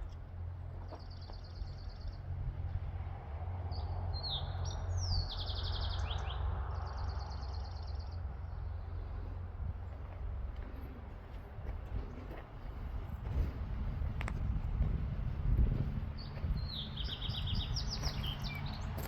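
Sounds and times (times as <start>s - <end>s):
songbird singing: 0.8s - 2.4s, 3.7s - 9.4s, 15.8s - 19.0s
steady low rumble: 6.3s - 19.0s.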